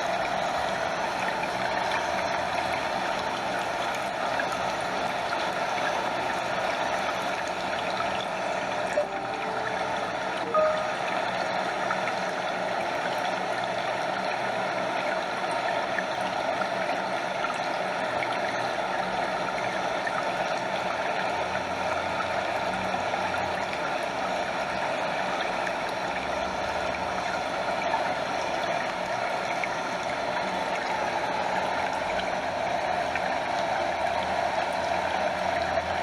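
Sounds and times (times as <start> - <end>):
stream running: 0.0 - 36.0.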